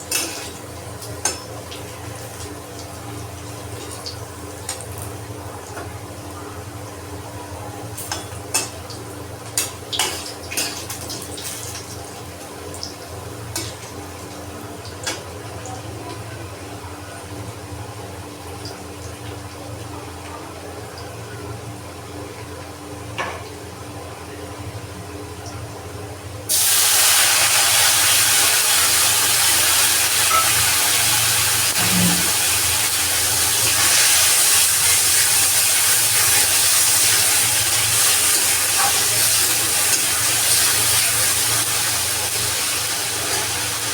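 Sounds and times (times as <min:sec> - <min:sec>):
food sizzling in hot oil: 0:00.0 - 0:05.2, 0:07.9 - 0:14.4, 0:26.5 - 0:43.9
utensils clicking on a pan: 0:00.1 - 0:00.6, 0:30.1 - 0:30.8
steady hum: 0:31.6 - 0:32.8.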